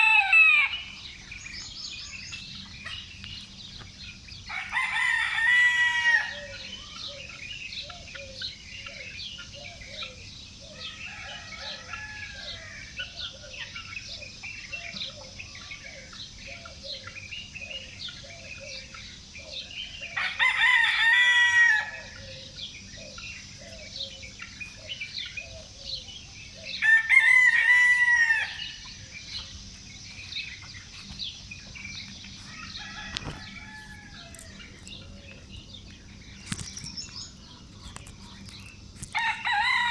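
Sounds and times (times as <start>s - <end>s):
rooster crowing: 0.0s - 1.0s, 4.5s - 6.8s, 10.8s - 13.0s, 20.2s - 22.4s, 26.8s - 28.9s, 32.4s - 35.3s, 39.1s - 39.9s
songbirds twittering: 0.0s - 39.9s.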